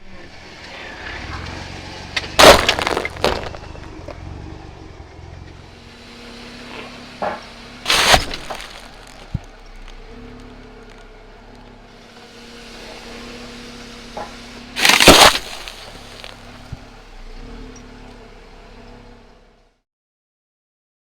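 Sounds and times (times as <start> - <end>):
low engine running: 0.0 - 19.8
tyre crushing brittle objects: 2.2 - 4.2, 6.7 - 11.1, 14.2 - 16.8.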